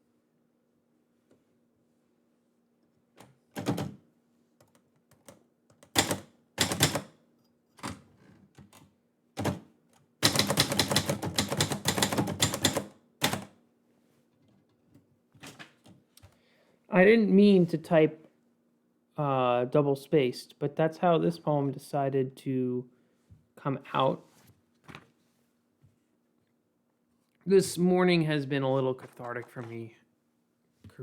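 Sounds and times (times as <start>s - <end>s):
manual typewriter typing: 3.2s - 4.0s, 5.1s - 7.1s, 9.4s - 9.6s, 10.2s - 13.5s.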